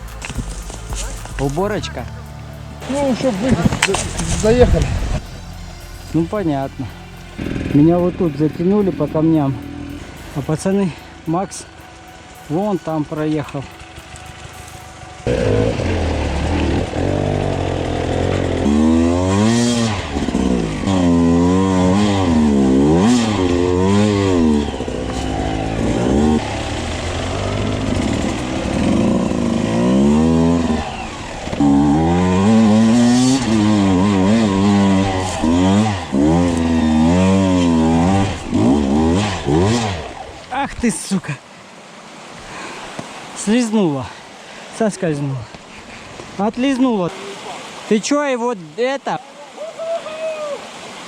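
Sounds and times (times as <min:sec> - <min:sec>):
motorcycle engine revving: 0:00.0 - 0:40.6.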